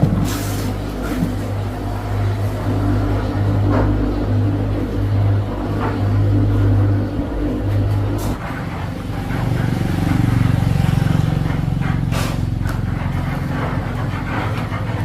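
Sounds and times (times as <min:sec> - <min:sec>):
small motorcycle engine running: 0:01.0 - 0:15.0.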